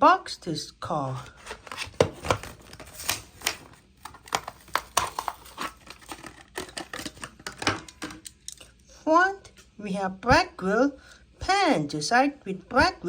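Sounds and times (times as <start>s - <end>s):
plastic packaging being torn open: 1.2s - 8.3s.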